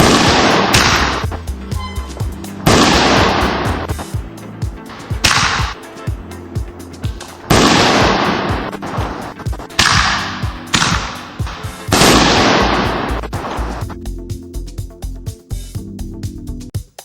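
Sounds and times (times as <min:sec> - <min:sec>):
fireworks bursting: 0:00.0 - 0:01.4, 0:02.1 - 0:04.1, 0:07.1 - 0:13.8
background music with steady beat: 0:00.0 - 0:17.0.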